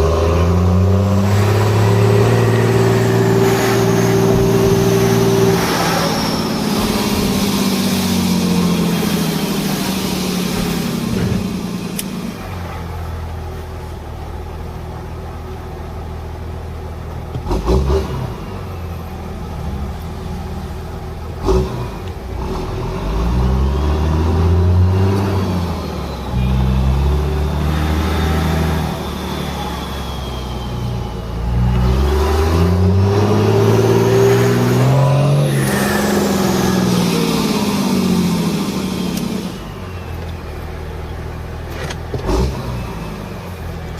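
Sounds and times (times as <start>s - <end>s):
diesel engine running: 0.0s - 43.9s
high whistle: 25.3s - 32.5s, 33.6s - 40.9s.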